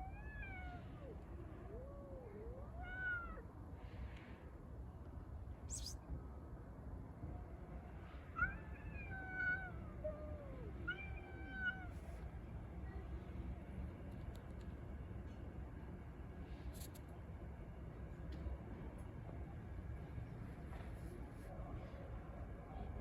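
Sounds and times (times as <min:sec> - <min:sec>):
cats yowling in a fight: 0:00.0 - 0:03.5, 0:08.2 - 0:12.1.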